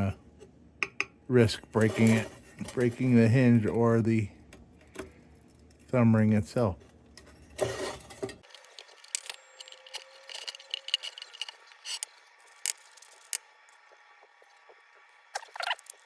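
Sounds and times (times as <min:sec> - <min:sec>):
metal lantern parts clicking: 0:08.1 - 0:13.4.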